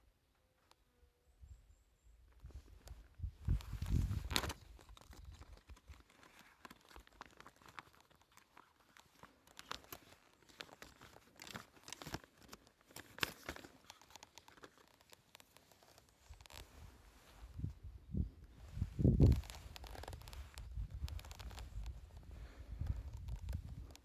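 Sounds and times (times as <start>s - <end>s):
crinkling and rustling: 2.3s - 24.0s.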